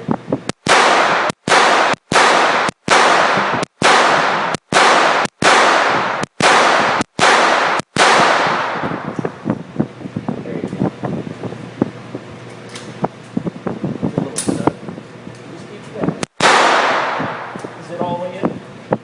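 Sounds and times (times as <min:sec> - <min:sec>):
pistol shots: 0:00.5 - 0:09.2, 0:16.2 - 0:17.8.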